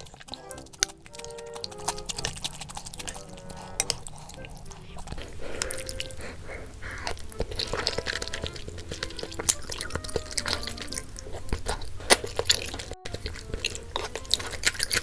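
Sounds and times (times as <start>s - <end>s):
utensils clicking against bowl: 0.0s - 5.9s
wet slurping and chewing: 0.0s - 15.0s.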